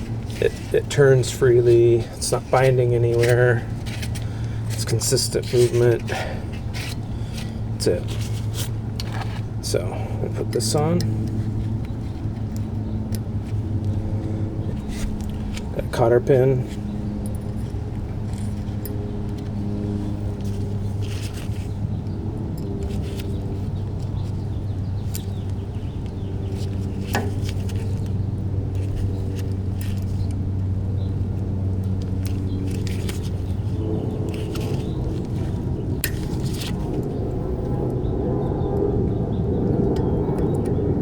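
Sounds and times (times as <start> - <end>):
low mechanical hum: 0.0 - 41.0.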